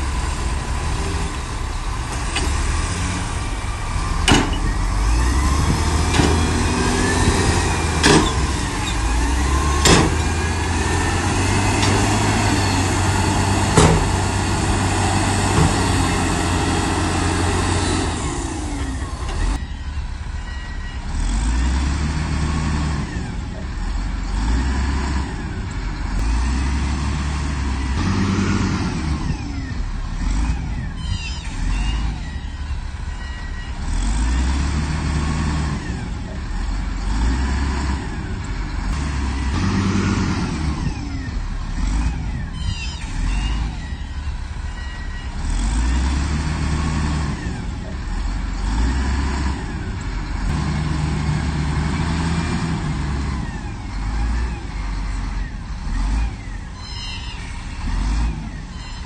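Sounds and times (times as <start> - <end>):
diesel engine under load: 0.0 - 59.0
sharp metallic knocks: 4.2 - 4.7, 9.8 - 10.3.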